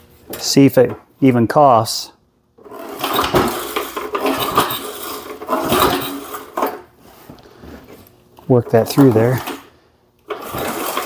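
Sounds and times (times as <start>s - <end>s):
mower engine cranking and clattering: 2.6s - 7.0s, 8.4s - 11.0s.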